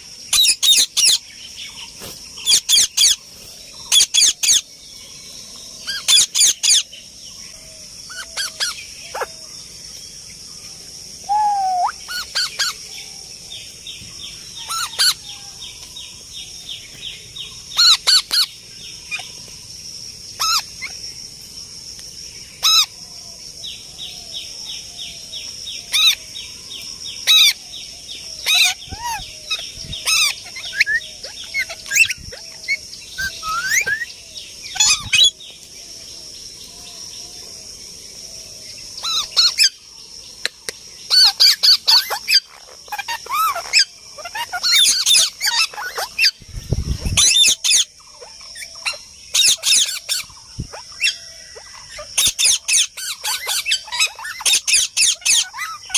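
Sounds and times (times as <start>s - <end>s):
birds chirping: 0.0s - 55.9s
parrots squawking: 2.4s - 3.2s, 3.9s - 4.6s, 5.9s - 6.9s, 8.1s - 9.4s, 11.3s - 12.8s, 14.6s - 15.3s, 17.8s - 18.5s, 20.4s - 20.9s, 28.4s - 34.1s, 34.7s - 35.3s, 39.0s - 39.7s, 41.1s - 46.4s, 47.2s - 55.9s.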